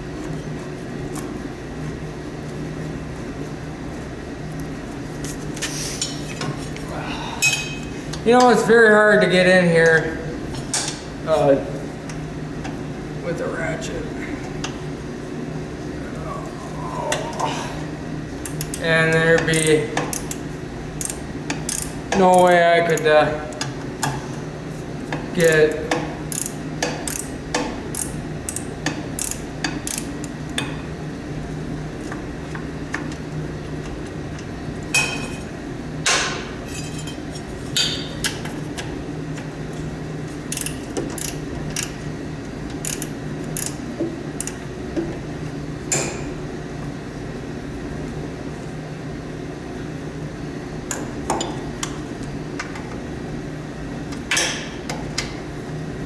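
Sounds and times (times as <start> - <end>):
steady low hum: 0.0 - 56.0
metal tools clinking: 36.7 - 38.1.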